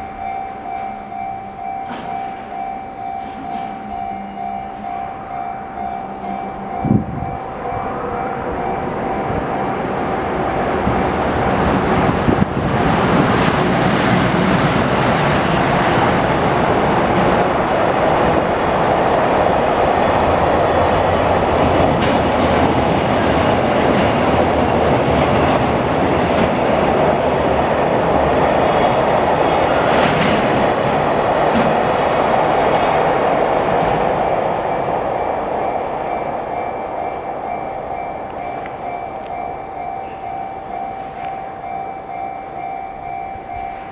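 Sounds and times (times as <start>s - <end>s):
level crossing warning bell: 0.0s - 12.4s, 33.0s - 43.9s
train wheels clattering over rail joints: 21.6s - 27.1s.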